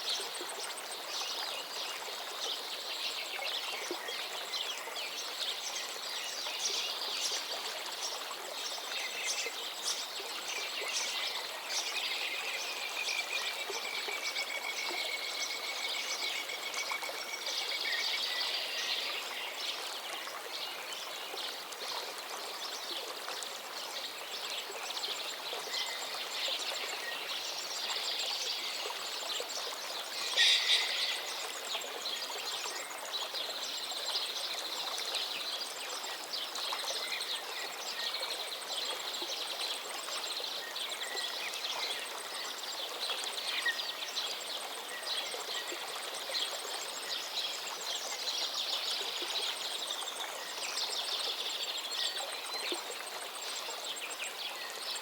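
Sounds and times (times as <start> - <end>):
river running: 0.0 - 55.0
birds chirping and singing: 30.2 - 31.3.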